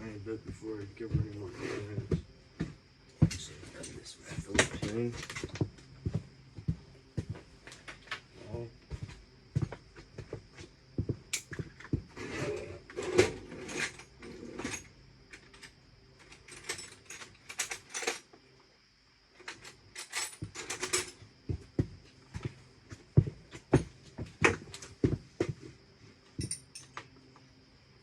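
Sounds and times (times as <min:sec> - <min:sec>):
hand tools clinking on metal: 0:26.4 - 0:27.0.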